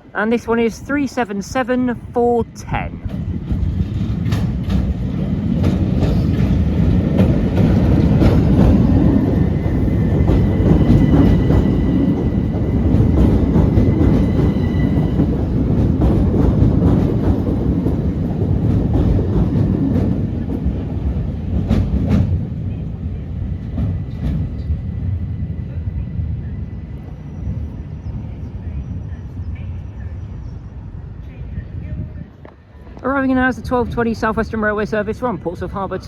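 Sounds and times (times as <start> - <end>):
train rumble: 0.0 - 36.0
wheels clicking over rail joints: 3.0 - 22.5.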